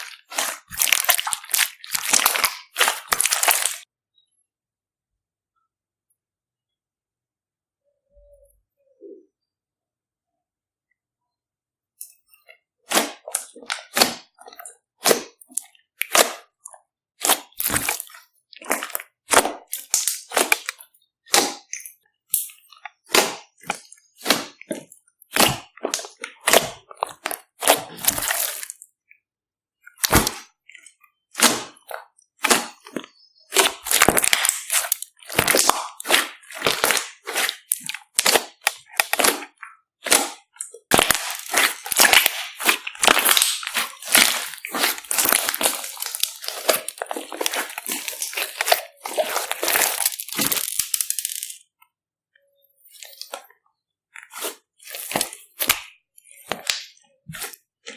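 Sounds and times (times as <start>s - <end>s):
slime squished with pops and crackles: 0.0s - 3.9s, 12.9s - 28.8s, 29.9s - 51.5s, 54.2s - 57.9s.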